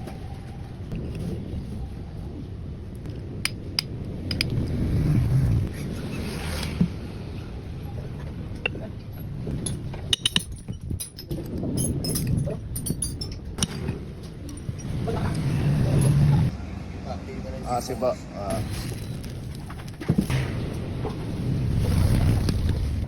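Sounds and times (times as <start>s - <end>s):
metal tools clinking: 9.6s - 16.5s.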